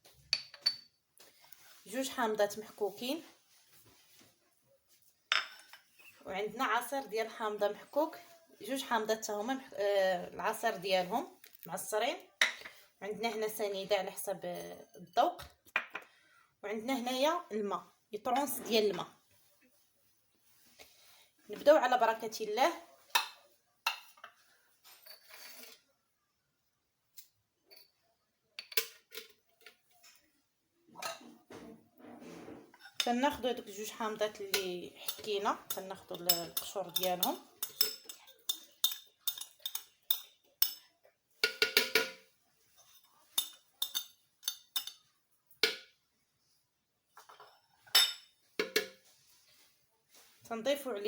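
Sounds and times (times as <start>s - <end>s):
dishes clinking and knocking: 0.3s - 1.0s, 5.3s - 5.9s, 31.0s - 33.4s, 41.4s - 42.3s, 47.2s - 49.0s
kitchenware knocking and clinking: 0.3s - 1.0s, 5.3s - 5.9s, 34.6s - 40.8s, 41.4s - 42.3s, 47.2s - 49.0s.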